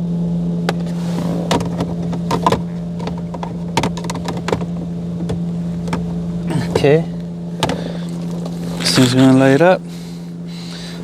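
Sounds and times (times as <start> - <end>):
low mechanical hum: 0.0 - 11.0
plastic clicks and knocks: 1.5 - 6.1.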